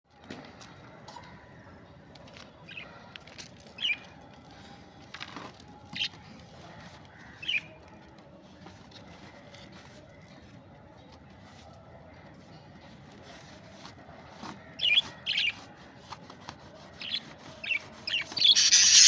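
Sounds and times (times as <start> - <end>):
budgerigar chirping: 18.4 - 19.0.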